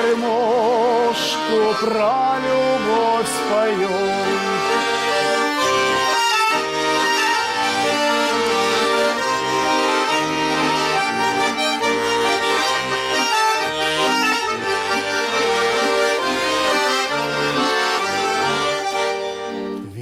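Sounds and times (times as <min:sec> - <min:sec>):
accordion playing folk melody: 0:00.0 - 0:20.0.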